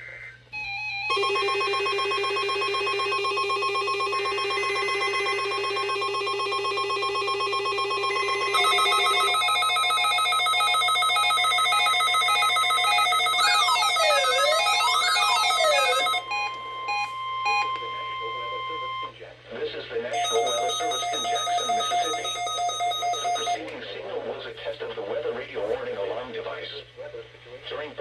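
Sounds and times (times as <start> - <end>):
continuous alarm tone: 0.1 - 19.2, 20.2 - 23.6
buzzing alarm: 0.5 - 19.1, 20.2 - 23.6.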